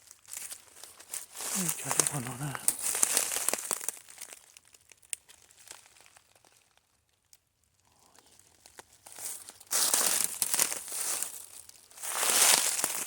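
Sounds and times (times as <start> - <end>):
footsteps crunching dry leaves: 0.0 - 6.8, 8.4 - 13.0.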